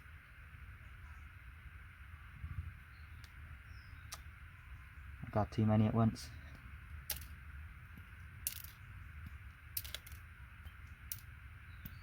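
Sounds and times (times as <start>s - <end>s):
small metal pins clicking: 7.0s - 7.4s, 8.4s - 8.8s, 9.7s - 12.0s.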